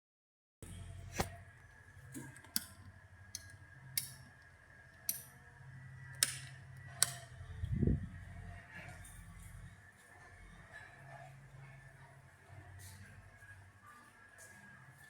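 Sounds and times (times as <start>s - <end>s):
ceiling fan motor humming: 0.6s - 9.8s
fan regulator clicks: 6.1s - 7.3s.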